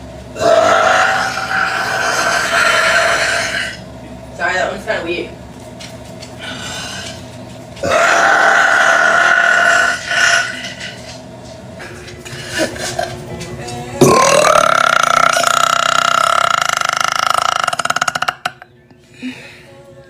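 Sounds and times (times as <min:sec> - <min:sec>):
woman burping: 0:14.0 - 0:18.6.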